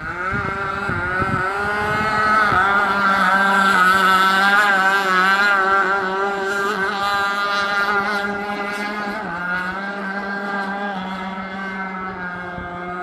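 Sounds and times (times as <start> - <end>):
model boat engine running: 0.0 - 13.0.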